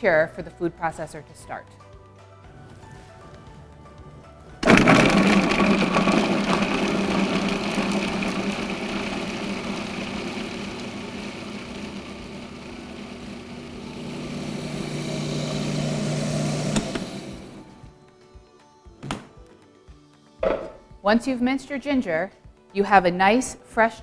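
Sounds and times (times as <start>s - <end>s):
food processor mincing ginger: 4.6s - 17.9s.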